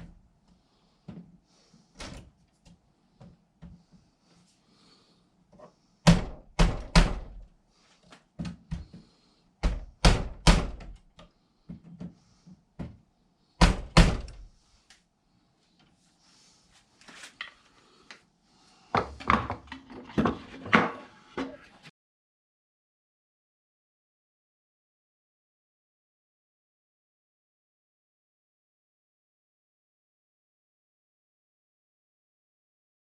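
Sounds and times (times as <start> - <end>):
hard objects thunking and knocking: 18.9 - 21.7.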